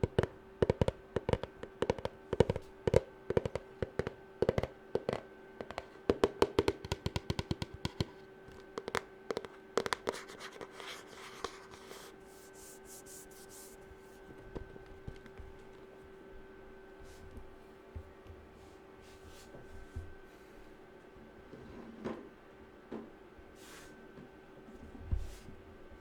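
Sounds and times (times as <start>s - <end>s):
fingernails tapping on hard object: 0.0s - 11.9s
soft scratching: 8.9s - 14.3s.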